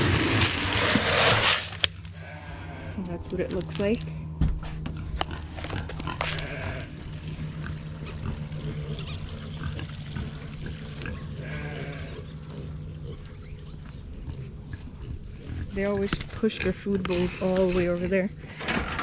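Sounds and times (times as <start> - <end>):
steady low hum: 0.0 - 19.0
sheep bleating: 2.2 - 3.0, 6.1 - 7.0, 11.4 - 12.3.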